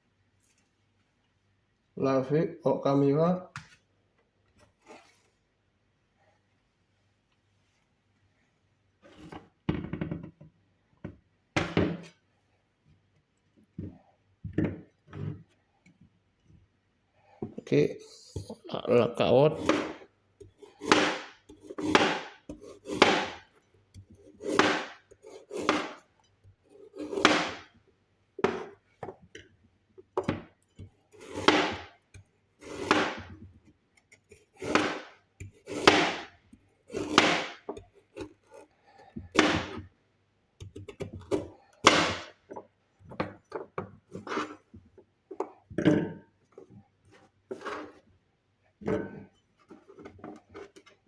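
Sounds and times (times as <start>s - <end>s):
knife slicing carrot on board: 19.5s - 23.5s, 24.1s - 26.1s, 26.7s - 27.7s, 31.1s - 31.9s, 32.6s - 33.3s, 34.0s - 36.3s, 36.9s - 39.9s, 44.1s - 44.7s.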